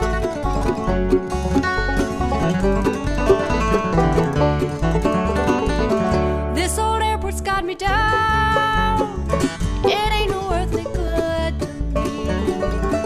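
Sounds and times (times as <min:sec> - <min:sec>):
banjo: 0:00.0 - 0:13.0
bass pulse: 0:00.0 - 0:13.0
bluegrass band playing: 0:00.0 - 0:13.0.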